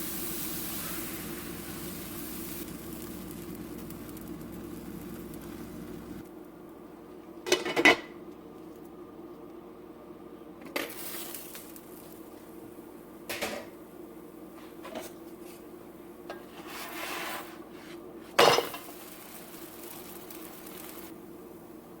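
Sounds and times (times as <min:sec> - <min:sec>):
faint steady hum: 0:00.0 - 0:22.0
utensil scraping a pan: 0:16.3 - 0:18.9.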